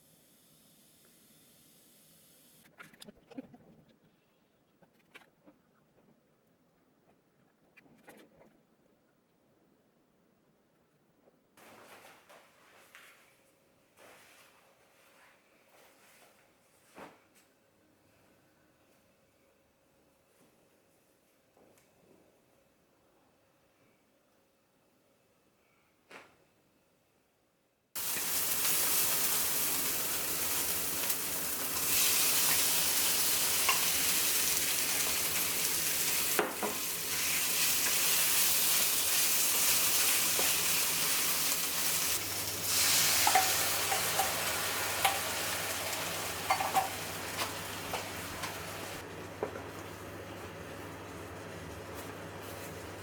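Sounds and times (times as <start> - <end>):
food sizzling in a pan: 28.0 - 49.0.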